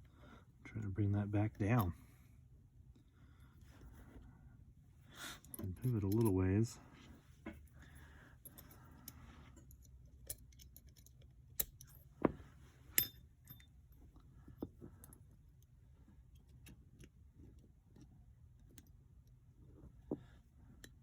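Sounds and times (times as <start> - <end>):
small metal parts clicking: 8.5 - 12.1.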